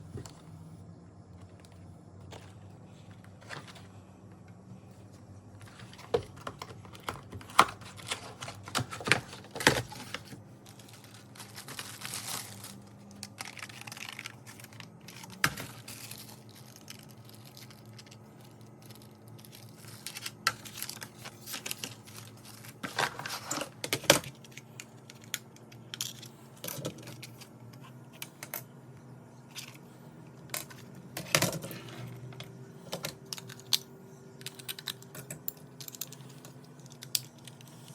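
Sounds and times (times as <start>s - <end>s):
packaging tearing and crinkling: 6.6s - 24.3s.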